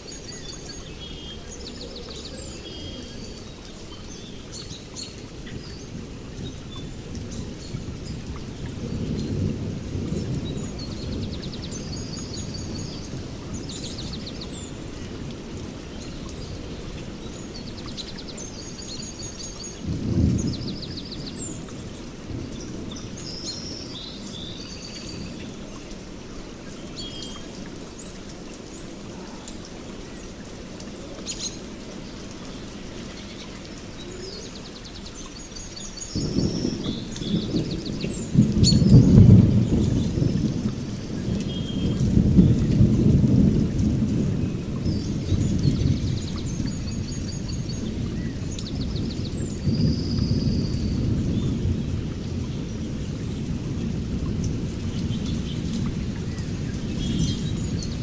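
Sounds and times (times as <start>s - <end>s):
birds chirping: 26.7s - 43.1s.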